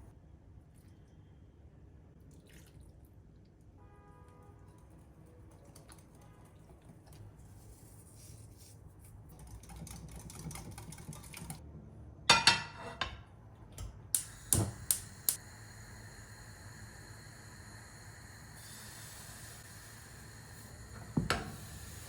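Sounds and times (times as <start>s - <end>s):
kitchenware clinking: 12.3s - 13.3s.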